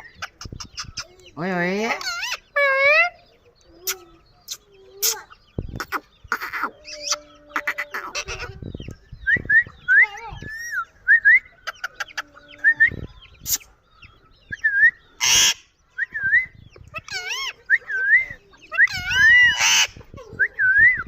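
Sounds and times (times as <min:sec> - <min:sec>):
parakeets chirping: 0:00.0 - 0:20.4.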